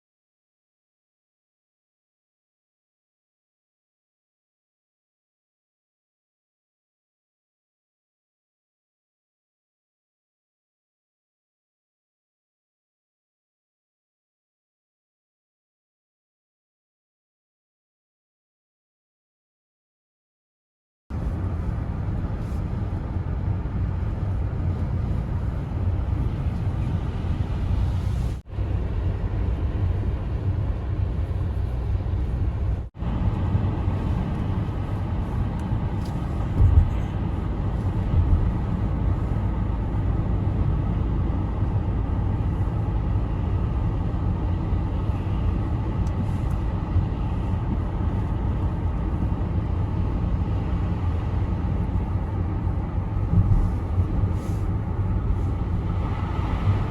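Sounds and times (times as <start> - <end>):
car road noise: 21.1 - 56.9.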